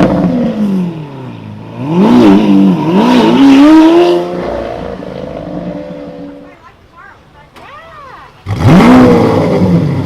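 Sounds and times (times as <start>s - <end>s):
car engine accelerating hard: 0.0s - 6.5s, 8.4s - 10.0s.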